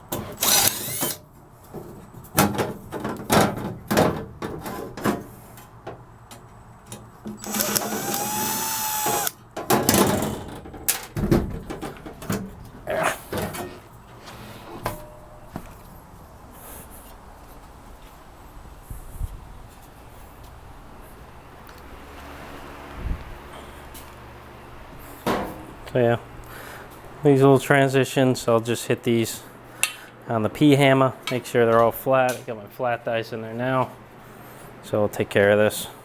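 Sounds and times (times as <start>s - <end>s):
power tool whirring: 0.4s - 1.2s, 7.4s - 9.4s.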